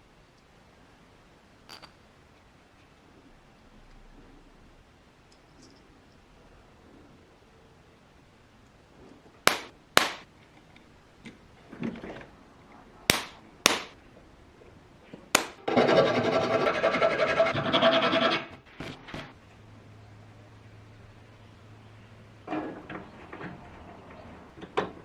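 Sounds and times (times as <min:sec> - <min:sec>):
sharp knocks on metal: 0:09.5 - 0:10.2, 0:13.1 - 0:14.0, 0:15.4 - 0:15.7.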